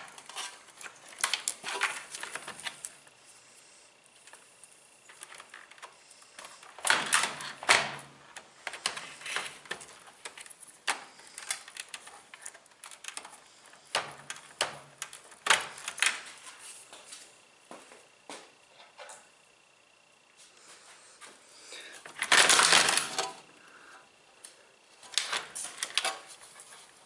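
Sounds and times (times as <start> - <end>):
plastic and metal parts clattering: 0.0 - 3.1, 5.0 - 16.6, 22.0 - 23.5, 25.0 - 27.0.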